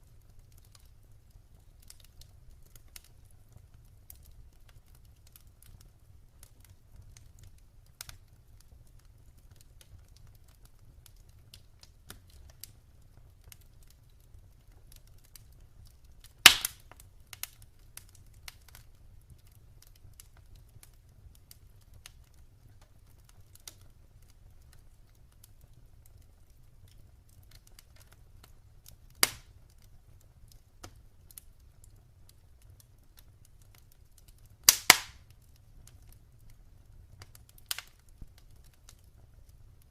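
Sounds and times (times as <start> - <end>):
wood fire crackling: 0.0 - 39.9
loud sharp pops from fire: 16.2 - 18.9, 28.8 - 29.9, 32.3 - 36.6, 37.2 - 39.1.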